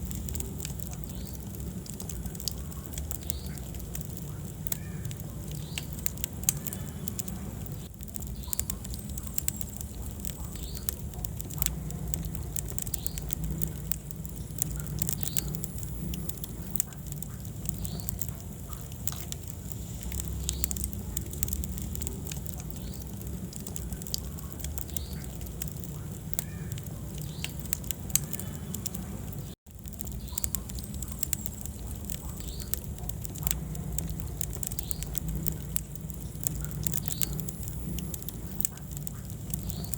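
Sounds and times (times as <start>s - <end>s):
wood fire crackling: 0.0s - 39.9s.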